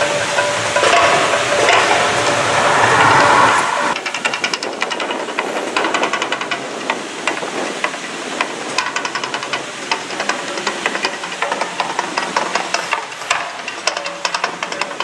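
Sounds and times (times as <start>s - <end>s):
fountain jets rushing spray: 0.0s - 15.0s.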